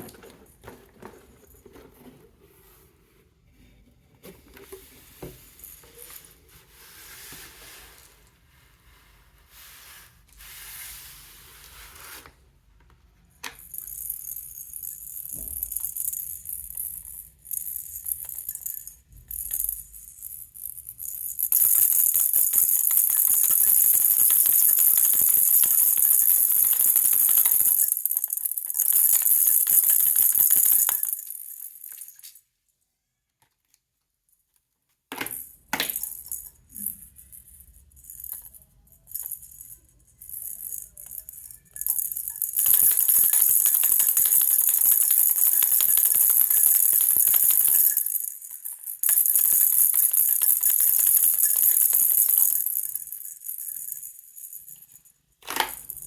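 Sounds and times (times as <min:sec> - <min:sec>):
baby rattle shaking: 0:13.6 - 0:32.4, 0:35.4 - 0:56.0.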